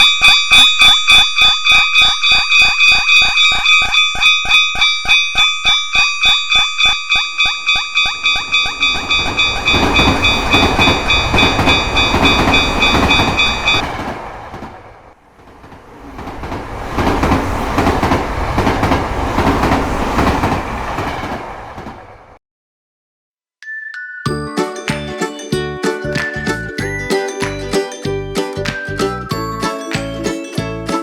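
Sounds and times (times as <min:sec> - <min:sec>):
level crossing bell clanging: 0:00.0 - 0:14.0, 0:23.9 - 0:31.0
train rumbling and wheel clatter: 0:08.1 - 0:22.4.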